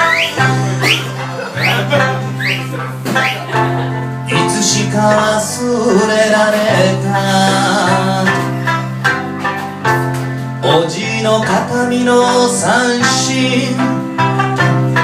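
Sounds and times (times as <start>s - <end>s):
quick rising whistles: 0.0s - 3.4s
plucked lute over bass: 0.0s - 15.0s.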